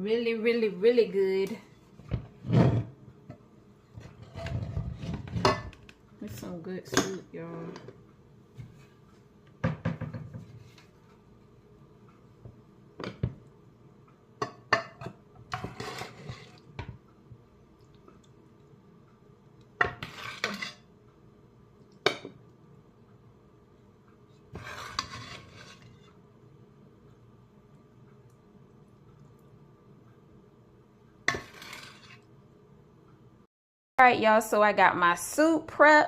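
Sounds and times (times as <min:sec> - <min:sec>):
utensil scraping: 0:15.5 - 0:16.7, 0:20.0 - 0:20.9, 0:24.5 - 0:26.2, 0:31.3 - 0:32.3.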